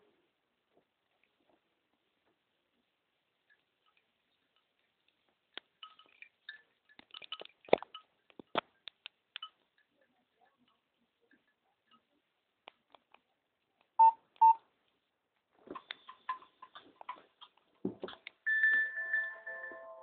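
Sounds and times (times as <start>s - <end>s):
high chime-like phone notes: 18.5s - 20.0s.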